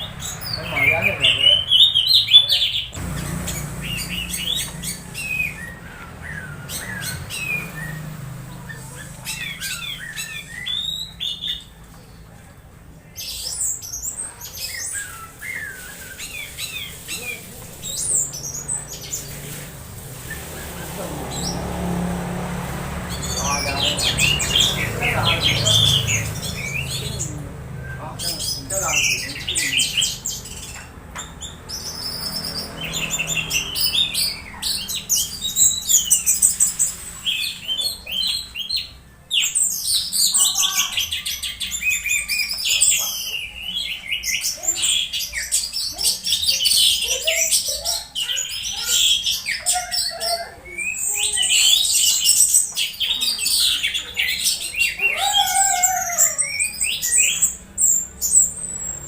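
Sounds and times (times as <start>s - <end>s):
thrush singing: 0.0s - 11.7s, 14.8s - 38.9s.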